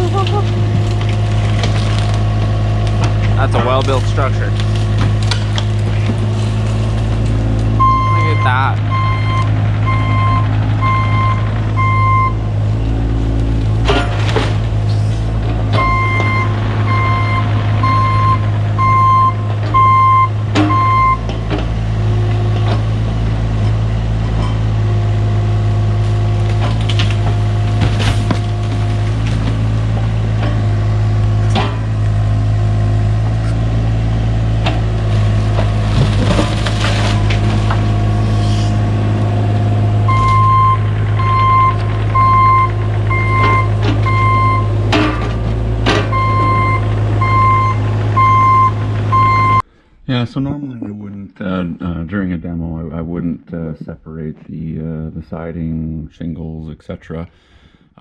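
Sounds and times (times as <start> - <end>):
wood cracking and knocking: 0.0 - 7.8, 26.1 - 30.8, 34.6 - 39.7
excavator diesel engine running: 0.0 - 49.8
travel alarm beeping: 7.8 - 12.4, 15.8 - 21.2, 40.1 - 44.7, 46.1 - 49.6.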